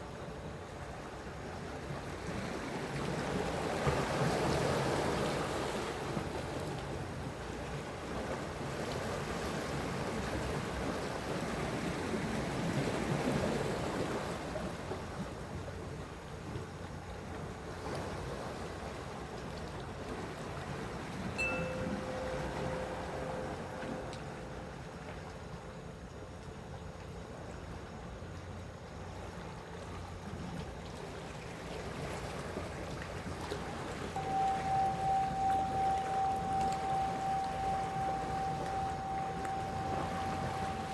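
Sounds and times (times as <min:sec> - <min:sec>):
sea waves washing in: 0:20.2 - 0:25.9, 0:31.7 - 0:40.9
low steady hum: 0:21.3 - 0:26.8, 0:34.1 - 0:40.9.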